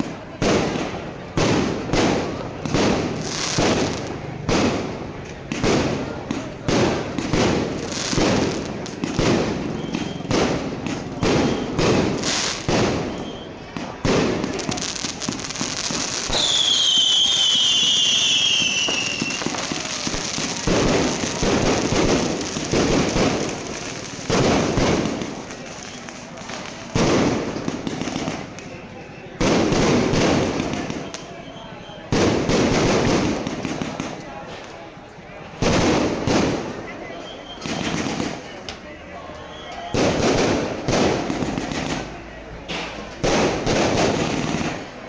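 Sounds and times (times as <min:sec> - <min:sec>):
fireworks bangs: 0:00.0 - 0:34.8, 0:35.5 - 0:38.8, 0:39.7 - 0:45.0.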